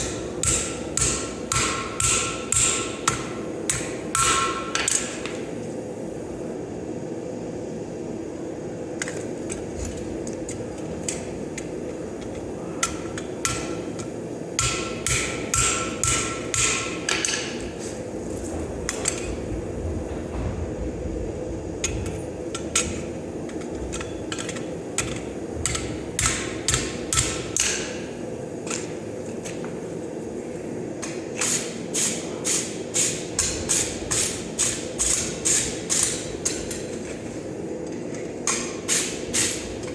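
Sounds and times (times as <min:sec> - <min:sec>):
hammer striking steel on anvil: 0:00.0 - 0:05.2, 0:12.8 - 0:13.9, 0:14.6 - 0:17.6, 0:25.6 - 0:28.1
steady hum: 0:00.0 - 0:39.9.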